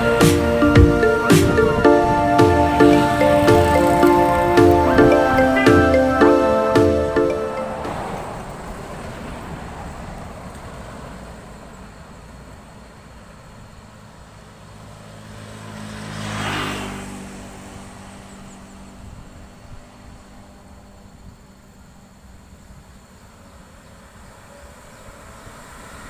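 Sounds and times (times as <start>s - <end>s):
vehicle passing close: 0.0s - 12.1s, 14.8s - 21.1s
bus driving off: 0.0s - 26.0s.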